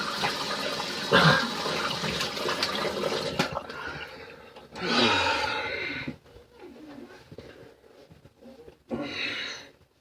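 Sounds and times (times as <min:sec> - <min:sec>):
tap water running into sink: 0:00.0 - 0:03.7.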